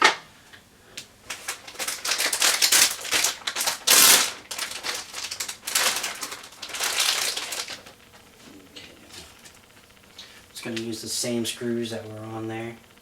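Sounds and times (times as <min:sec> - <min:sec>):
plastic parts clicking and rattling: 0:01.3 - 0:08.0.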